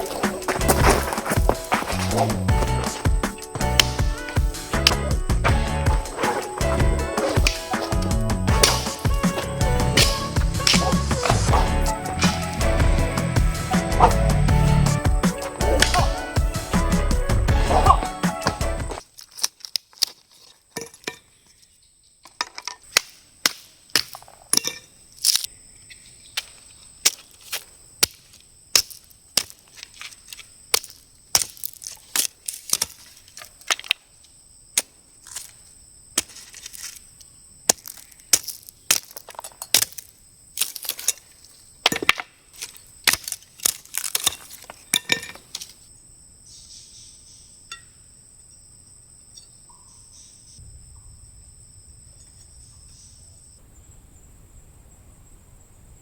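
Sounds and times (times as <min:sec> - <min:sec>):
sharp cracks and knocks: 0:00.0 - 0:12.6, 0:22.3 - 0:25.5, 0:26.3 - 0:34.0, 0:37.6 - 0:45.8
insects buzzing: 0:00.0 - 0:56.0.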